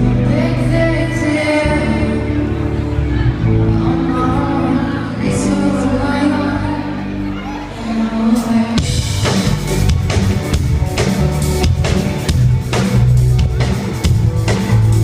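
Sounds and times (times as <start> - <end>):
live rock band playing: 0.0 - 15.0
drum kit kick and snare beat: 8.8 - 15.0.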